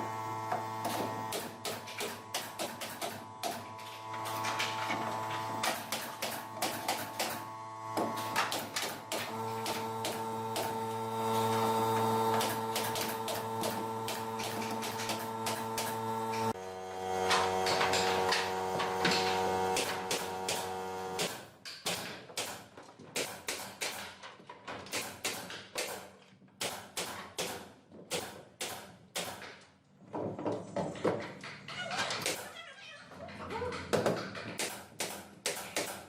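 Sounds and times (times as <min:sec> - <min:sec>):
power tool whining: 0:03.2 - 0:21.3.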